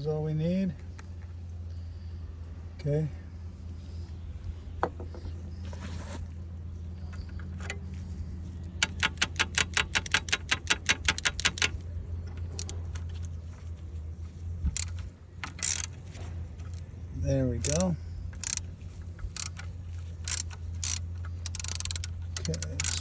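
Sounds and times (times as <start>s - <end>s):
ratchet wrench clicking: 8.7s - 13.3s, 14.7s - 16.8s, 17.6s - 23.0s.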